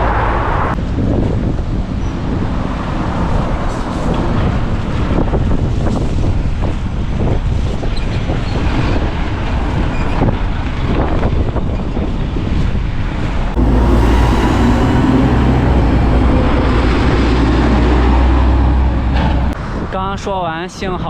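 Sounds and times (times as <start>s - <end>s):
deep steady rumble: 13.6s - 19.6s
wind buffeting microphone: 13.6s - 19.6s.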